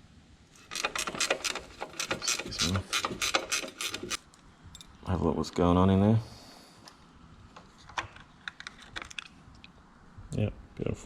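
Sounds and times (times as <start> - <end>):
ratchet spanner clicking: 0.7 - 4.2.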